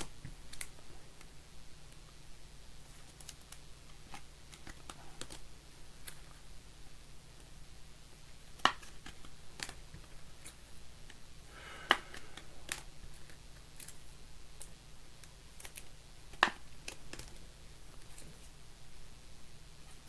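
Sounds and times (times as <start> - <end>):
trading cards and sleeves handled: 2.7 - 6.5, 8.5 - 11.2, 11.8 - 18.6.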